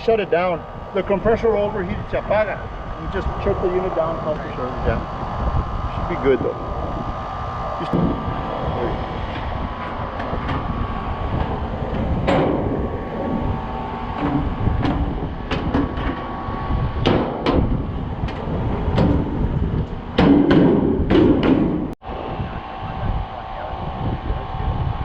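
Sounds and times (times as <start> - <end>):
air conditioning unit humming: 0.0 - 25.0
sharp clicks and metallic knocks: 9.2 - 22.0.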